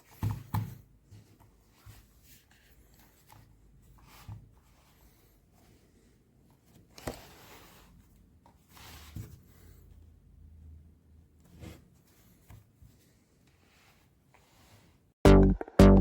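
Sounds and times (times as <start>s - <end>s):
handling rustles and soft knocks: 0.0s - 9.8s.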